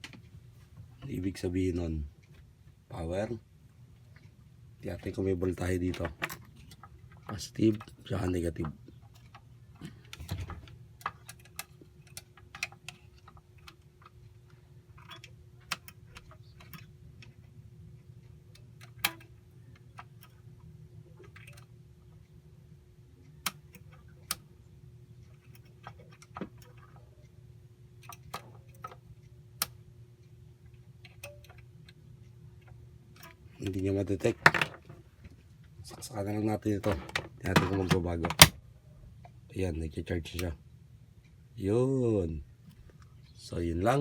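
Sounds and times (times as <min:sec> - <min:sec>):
low electrical hum: 0:00.0 - 0:44.0
test probes clicking and tapping: 0:28.0 - 0:34.8.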